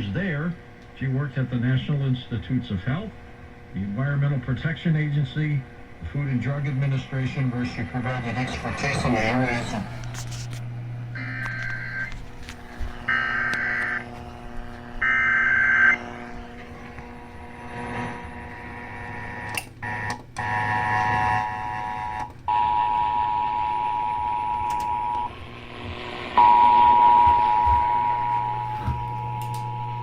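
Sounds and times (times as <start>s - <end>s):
radio hiss: 0.0s - 19.5s
steady low hum: 0.0s - 30.0s
two-tone attention signal: 26.4s - 30.0s.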